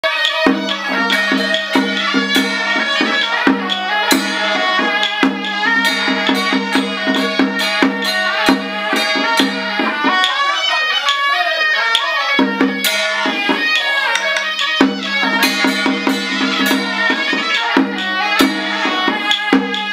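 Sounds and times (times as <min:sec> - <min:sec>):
sharp percussion strikes: 0:00.0 - 0:19.9.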